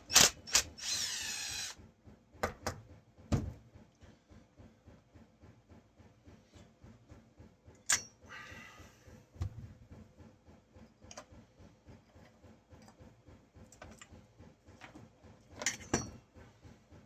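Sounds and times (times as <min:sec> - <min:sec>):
metal clanks: 0:15.6 - 0:16.3.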